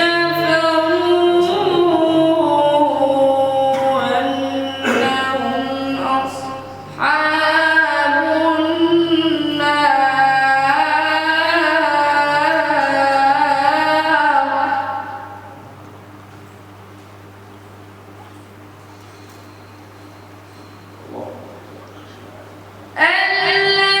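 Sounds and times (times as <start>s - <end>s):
man chanting melodically: 0.2s - 14.8s.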